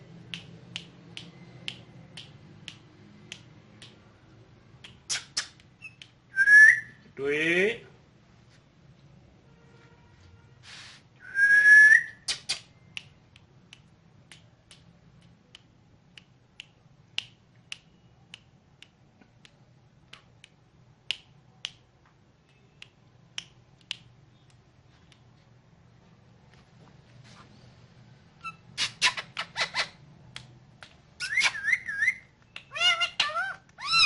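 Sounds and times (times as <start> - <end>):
parrot rising whistle: 6.3 - 7.0, 11.2 - 12.2.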